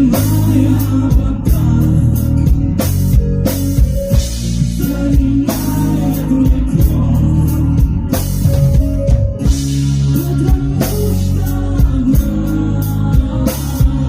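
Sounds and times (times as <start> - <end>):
drum kit beat: 0.0 - 14.0
rock band playing acoustic: 0.0 - 14.0.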